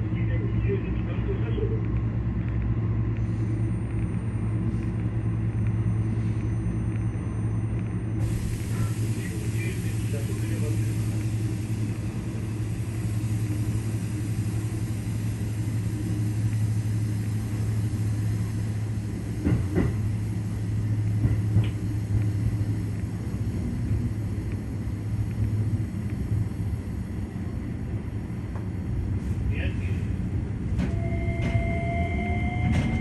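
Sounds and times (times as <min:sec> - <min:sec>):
electric train rumbling: 0:00.0 - 0:33.0.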